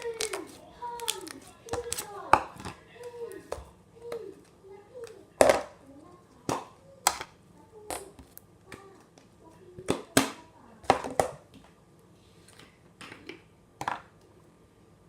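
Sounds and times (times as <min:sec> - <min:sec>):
slime clicking and squelching: 0:00.0 - 0:02.6.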